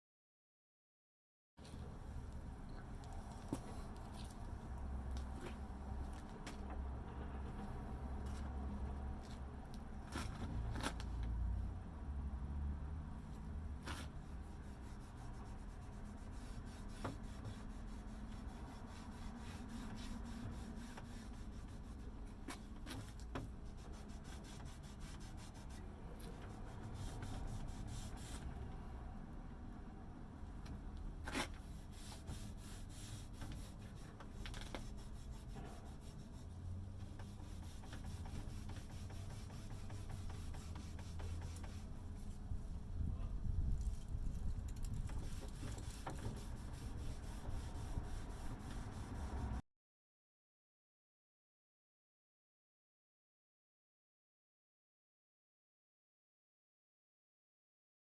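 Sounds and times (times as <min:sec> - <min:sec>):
faint rubbing on a surface: 0:13.8 - 0:28.5, 0:31.3 - 0:42.8, 0:45.1 - 0:49.6.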